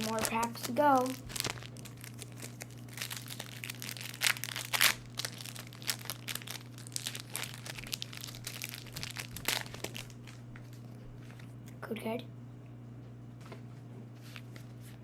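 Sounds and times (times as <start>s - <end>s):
foil wrapper crinkling and tearing: 0.0s - 11.4s.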